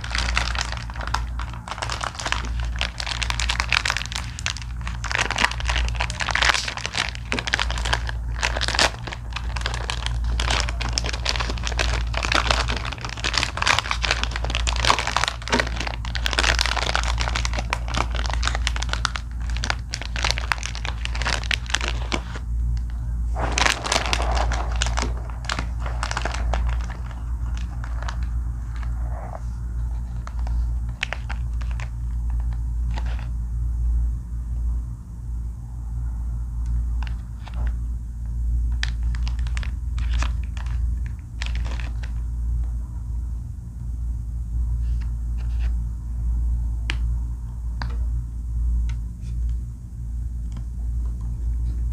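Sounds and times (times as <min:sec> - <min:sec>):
wrapper crinkling and tearing: 0:00.0 - 0:22.4, 0:23.4 - 0:29.2, 0:29.8 - 0:33.3, 0:38.7 - 0:42.2
steady low hum: 0:00.0 - 0:51.9.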